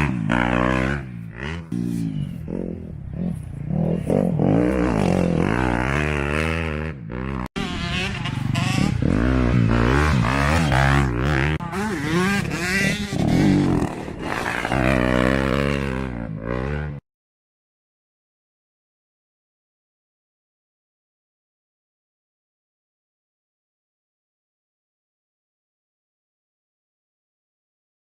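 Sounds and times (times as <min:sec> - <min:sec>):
dirt bike engine revving: 0:00.0 - 0:17.0.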